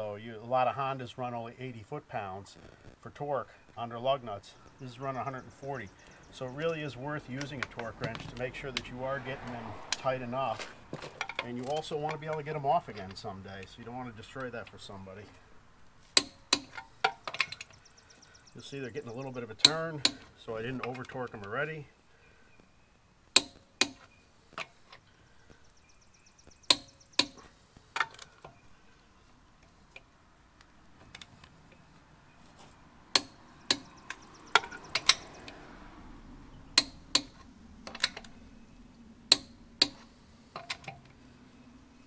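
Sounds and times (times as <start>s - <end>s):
torque wrench clicking: 16.2s - 17.8s, 33.1s - 35.6s, 36.8s - 38.4s, 39.3s - 41.0s.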